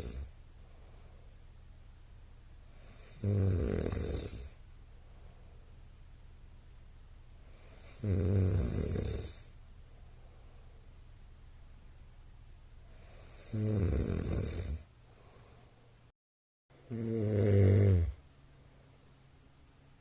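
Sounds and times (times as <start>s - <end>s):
man snoring loudly: 0.0s - 0.3s, 2.8s - 4.6s, 7.5s - 9.5s, 13.0s - 14.9s, 16.8s - 18.2s.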